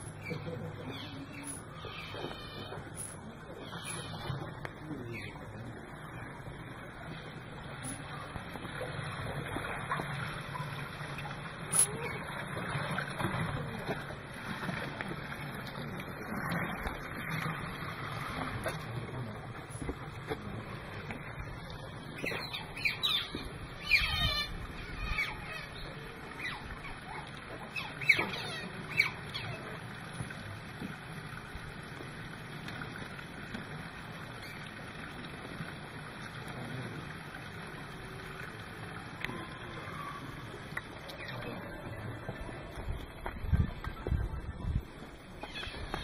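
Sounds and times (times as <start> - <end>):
steady low hum: 0.0 - 46.0
high-pitched animal chirps: 22.5 - 25.7.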